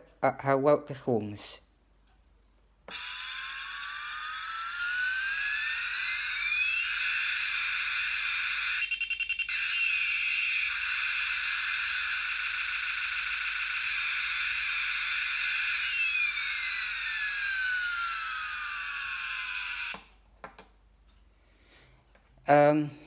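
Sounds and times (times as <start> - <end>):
toy engine whine from tiny speaker: 2.9 - 20.1.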